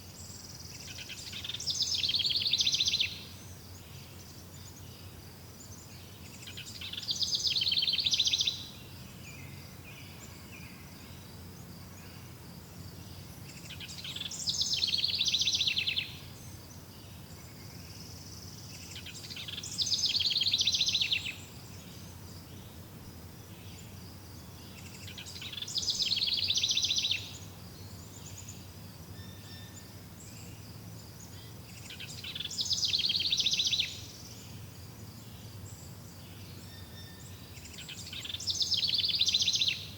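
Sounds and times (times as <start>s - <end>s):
faint steady high buzz: 0.0s - 39.9s
songbird trilling: 0.8s - 3.3s, 6.4s - 8.8s, 13.2s - 16.3s, 17.7s - 22.8s, 24.6s - 29.9s, 31.2s - 34.6s, 36.4s - 39.9s.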